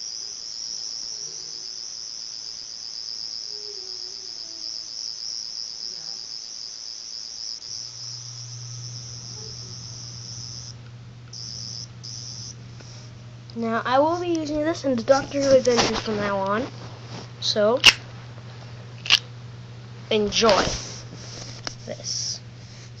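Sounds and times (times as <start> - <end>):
toy warbling electronic buzz: 0.0 - 2.0, 3.2 - 6.3, 7.2 - 16.4
steady low hum: 7.4 - 23.0.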